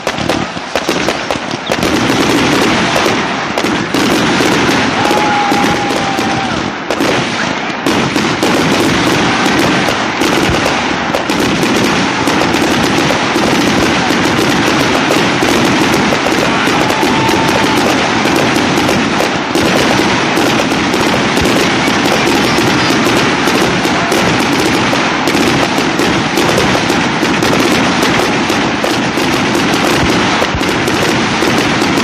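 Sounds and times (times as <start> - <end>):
firework whistling: 0.0 - 32.0
fireworks crackling bangs: 0.0 - 32.0.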